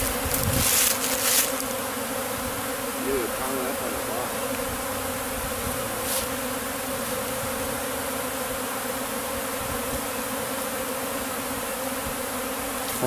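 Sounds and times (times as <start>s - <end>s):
bee swarm buzzing: 0.0s - 13.0s.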